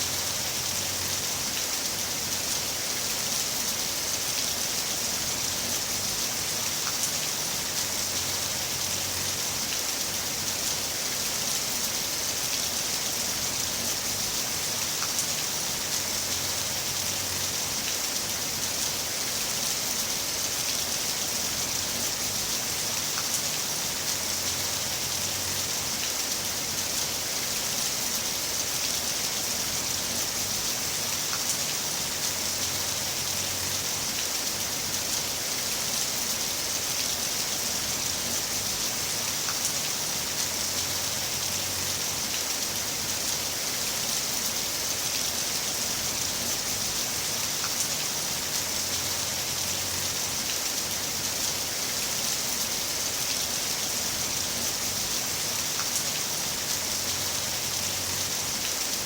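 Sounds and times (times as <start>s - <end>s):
heavy rain hissing: 0.0s - 59.0s
raindrop ticks: 23.1s - 23.5s, 55.7s - 56.3s.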